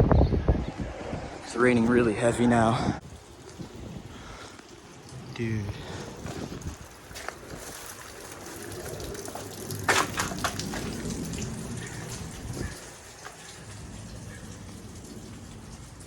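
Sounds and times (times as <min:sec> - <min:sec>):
heavy rain falling: 0:03.0 - 0:16.0.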